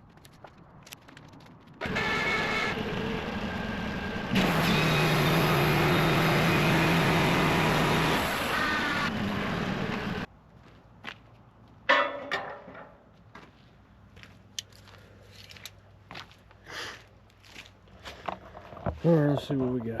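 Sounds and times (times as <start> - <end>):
sawmill running: 1.8 - 10.3.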